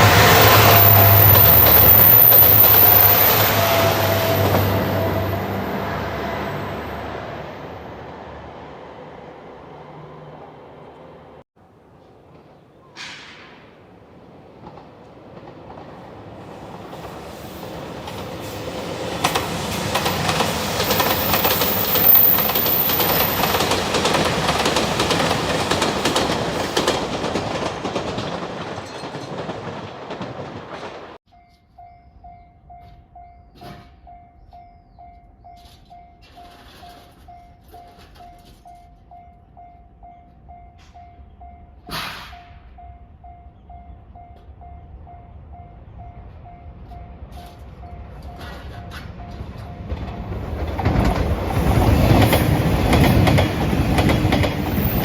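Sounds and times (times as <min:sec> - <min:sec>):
crossing warning bell ringing: 0:00.0 - 0:08.2, 0:31.3 - 0:51.2
diesel train passing: 0:00.0 - 0:31.2, 0:32.2 - 0:55.0.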